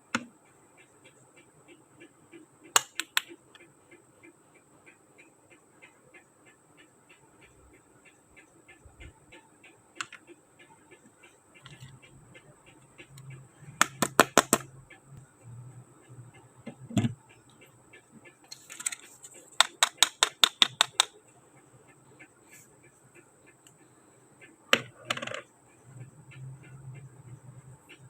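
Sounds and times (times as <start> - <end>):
light steady ticking: 0.0 - 28.0
plastic toy pieces clicking: 13.8 - 14.7, 18.5 - 21.1, 24.7 - 25.5.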